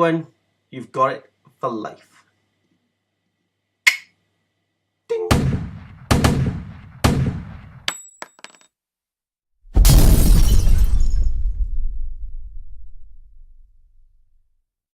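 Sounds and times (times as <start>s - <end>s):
loud gunshot-like bangs: 5.3s - 7.8s
loud crash: 9.7s - 14.0s.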